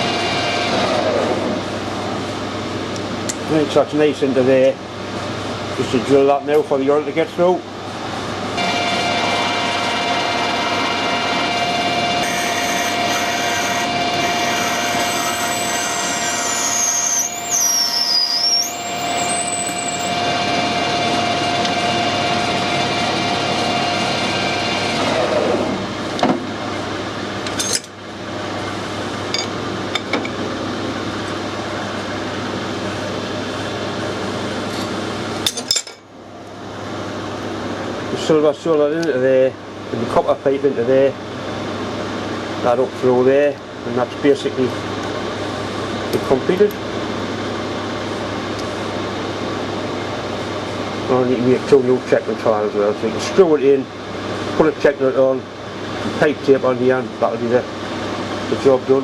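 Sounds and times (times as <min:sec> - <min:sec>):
lathe motor whine: 0:00.0 - 0:01.6, 0:08.6 - 0:25.9
drill squealing in brass: 0:12.2 - 0:20.2.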